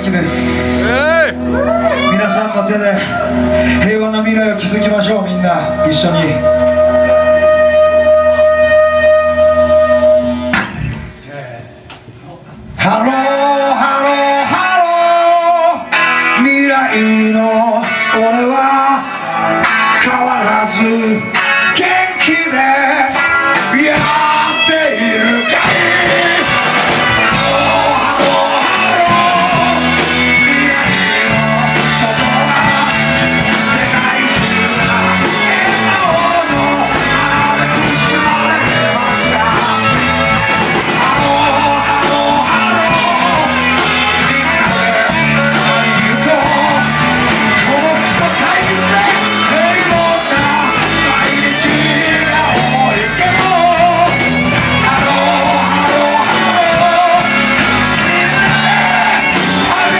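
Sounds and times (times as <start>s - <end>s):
rock band playing: 0.0s - 11.2s, 11.8s - 59.9s
person shouting singing: 0.7s - 4.0s, 20.0s - 59.9s.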